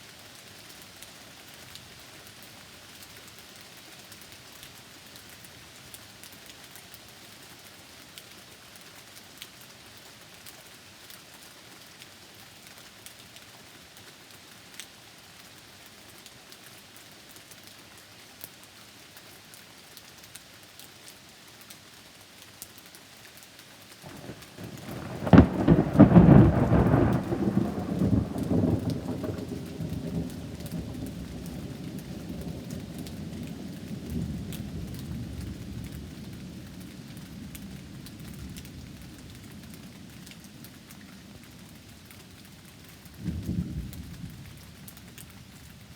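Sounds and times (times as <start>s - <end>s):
rain falling: 0.0s - 45.9s
thunderclap and rumble: 24.1s - 35.8s.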